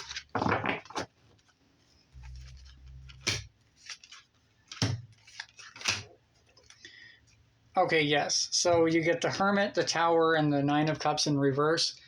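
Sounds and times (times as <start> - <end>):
low rubbing sound: 2.1 - 3.5
cards rustling: 2.2 - 6.9.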